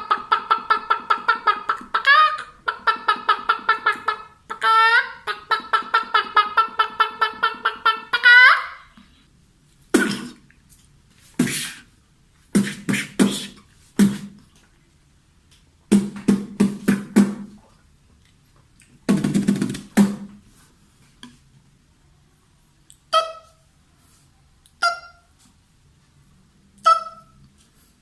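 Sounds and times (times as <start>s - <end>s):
man beatboxing: 10.0s - 10.4s, 11.4s - 11.9s, 12.6s - 14.4s.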